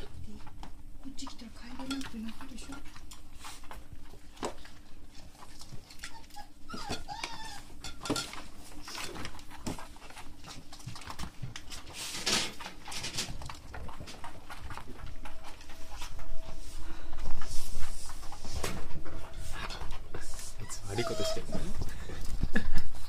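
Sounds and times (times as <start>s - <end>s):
puppy paws clicking and rustling: 0.0s - 23.0s
puppies whining: 5.4s - 10.9s, 19.1s - 22.4s.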